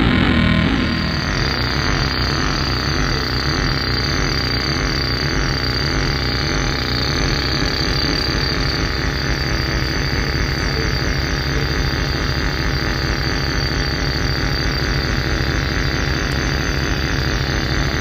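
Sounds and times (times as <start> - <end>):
crackling rumble: 0.0 - 13.6
steady high tone: 0.0 - 18.0.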